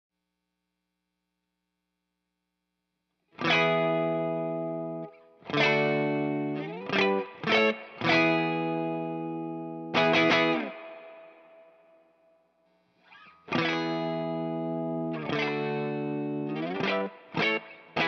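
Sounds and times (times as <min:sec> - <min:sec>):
distorted electric guitar chords: 0:03.4 - 0:11.6, 0:13.6 - 0:18.0.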